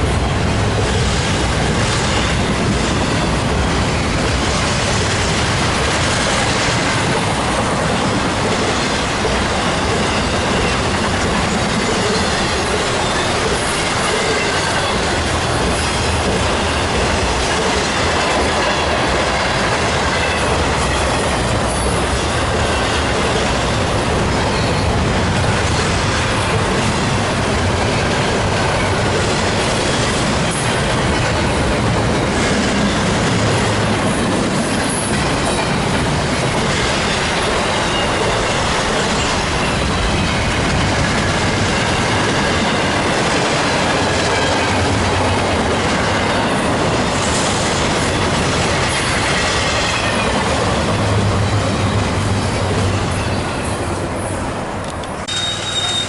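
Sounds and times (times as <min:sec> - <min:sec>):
train wheels rumbling on rails: 0:00.0 - 0:56.0
high-pitched wheel squeal: 0:55.3 - 0:56.0.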